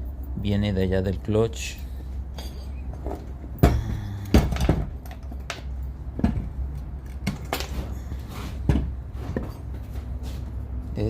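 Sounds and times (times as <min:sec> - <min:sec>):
steady low hum: 0:00.0 - 0:11.0
metal parts clinking and knocking: 0:04.3 - 0:05.8.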